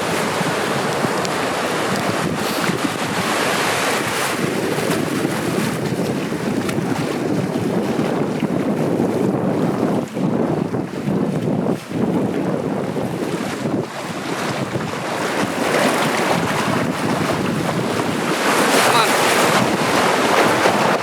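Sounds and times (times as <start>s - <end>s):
ocean surf breaking: 0.0s - 7.2s, 13.2s - 21.0s
wind on microphone: 0.0s - 21.0s.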